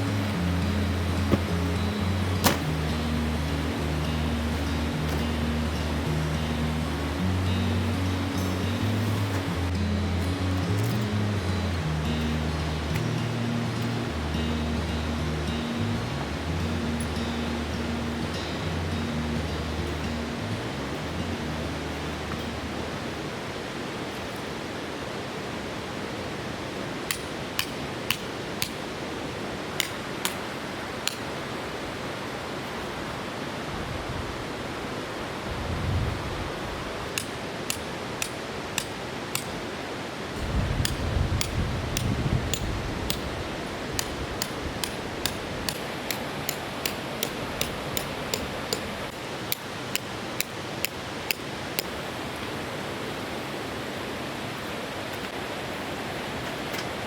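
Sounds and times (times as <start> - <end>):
river rushing: 0.0 - 57.0
tent pegs being hammered: 0.1 - 3.2, 4.2 - 6.9, 7.6 - 11.3, 12.1 - 14.6, 27.0 - 29.0, 29.7 - 31.4, 37.1 - 39.7, 40.4 - 52.0.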